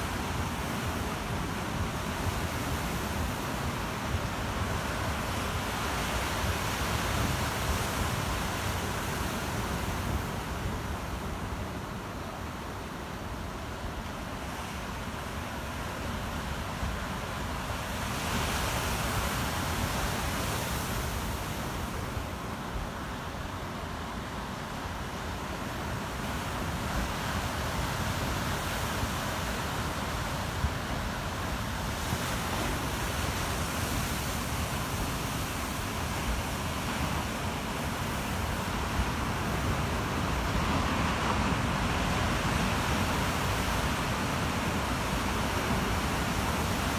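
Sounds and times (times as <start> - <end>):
ocean waves breaking: 29.7 - 46.9.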